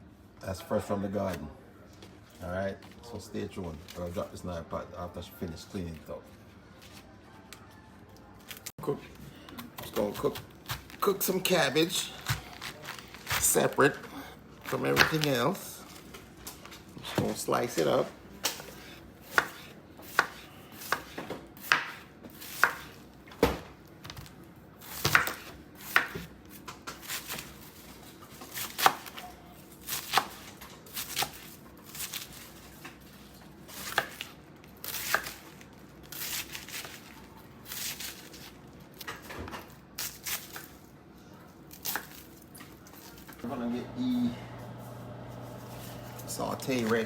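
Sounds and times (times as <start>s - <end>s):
knife chopping cabbage on board: 9.8s - 13.8s, 14.6s - 15.3s, 18.4s - 27.8s, 28.4s - 29.2s, 29.8s - 33.1s, 33.7s - 35.4s.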